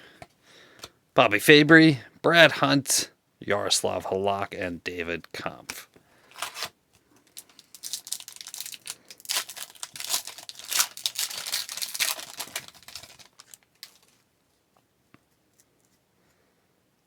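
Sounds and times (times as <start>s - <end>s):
foil wrapper crinkling and tearing: 6.2s - 14.2s.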